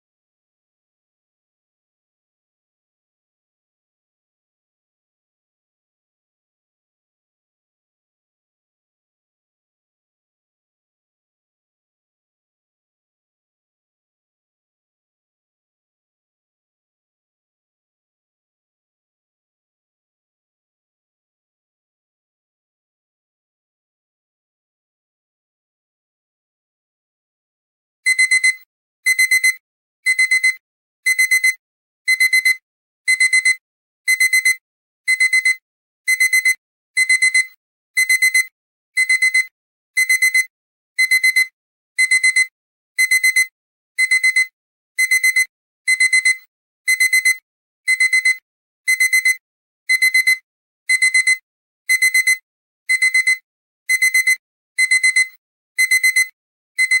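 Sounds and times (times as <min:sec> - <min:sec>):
alarm clock beeping: 0:28.1 - 0:57.0.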